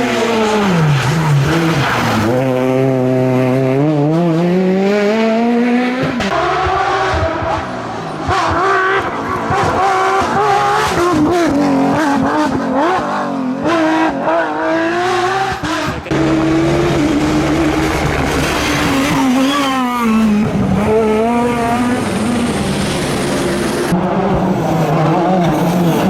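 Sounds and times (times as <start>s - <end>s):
rally car engine revving: 0.0s - 26.0s.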